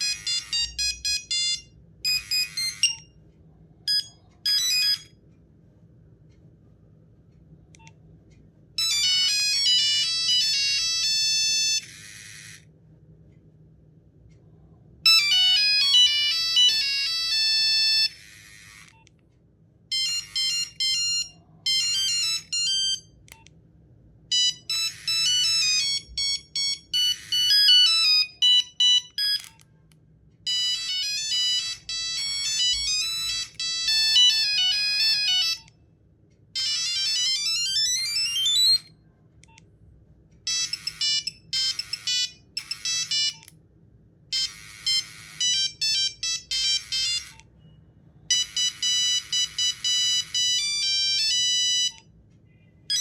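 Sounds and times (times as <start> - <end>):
phone ringtone beeping melodies: 0.0 - 3.1, 3.9 - 5.2, 8.8 - 12.6, 15.1 - 19.1, 19.9 - 23.3, 24.3 - 29.6, 30.5 - 35.7, 36.6 - 38.9, 40.5 - 43.5, 44.3 - 52.2.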